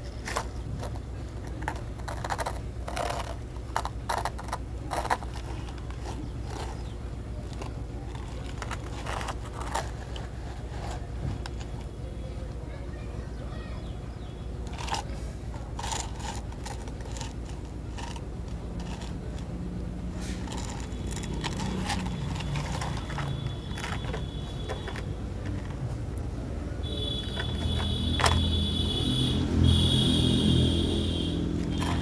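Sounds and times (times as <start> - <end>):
clicks taps and scrapes: 0.0 - 12.0, 14.6 - 26.3, 27.1 - 29.6, 31.3 - 32.0
small motor whine: 26.8 - 32.0.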